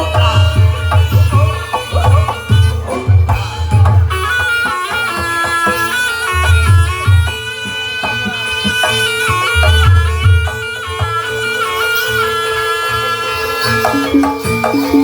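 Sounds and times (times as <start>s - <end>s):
reedy wind instrument melody: 0.0s - 15.0s.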